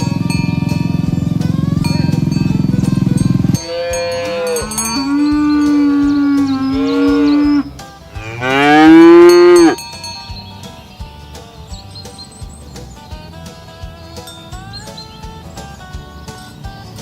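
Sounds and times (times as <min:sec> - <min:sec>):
cows mooing: 0:01.0 - 0:09.8.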